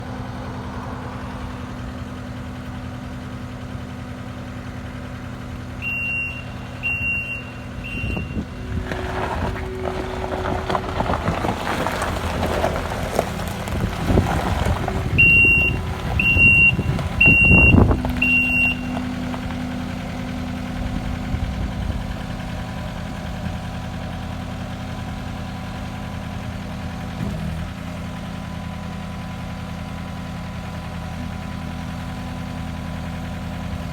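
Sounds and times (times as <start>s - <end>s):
diesel engine running: 0.0s - 33.9s
reversing alarm beeping: 5.8s - 8.6s, 15.1s - 19.0s.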